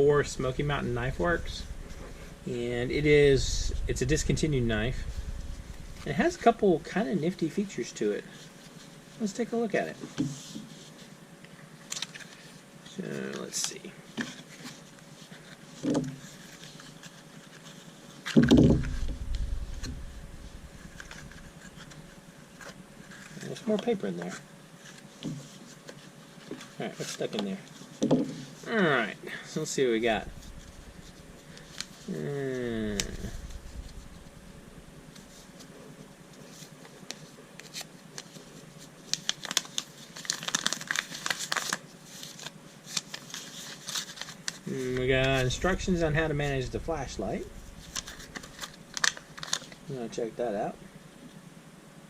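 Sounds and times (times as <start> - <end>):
low bump: 0.0 - 6.9, 18.8 - 21.4, 30.0 - 31.4, 32.9 - 34.9
paper rustling and crinkling: 11.8 - 28.6, 30.0 - 49.9
cardboard scraping: 18.4 - 23.4.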